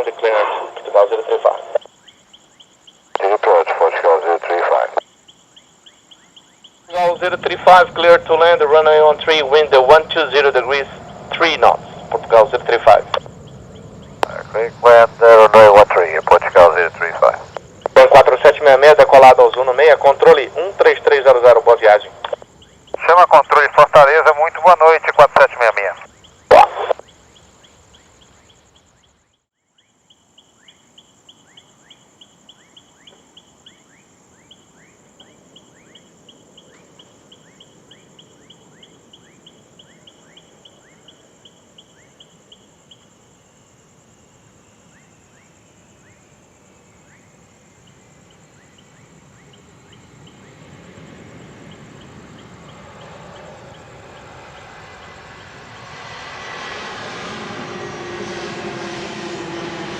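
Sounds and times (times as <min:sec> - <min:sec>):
jet airliner engine noise: 0:00.0 - 0:01.8, 0:03.2 - 0:05.0, 0:06.9 - 0:27.1, 0:48.0 - 0:59.9
night insects chirping: 0:00.0 - 0:59.9.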